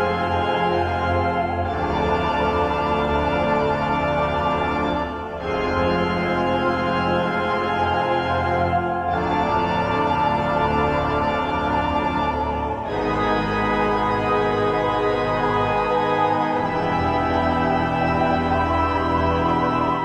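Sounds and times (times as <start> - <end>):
organ chords: 0.0 - 20.0.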